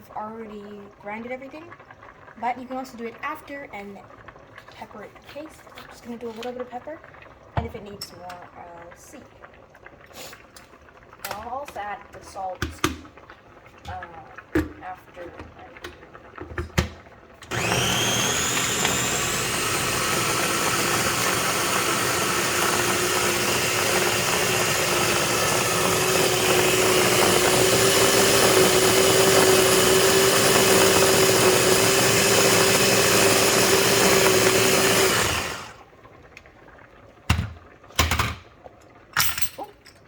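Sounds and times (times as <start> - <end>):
electric blender running: 17.5 - 35.8.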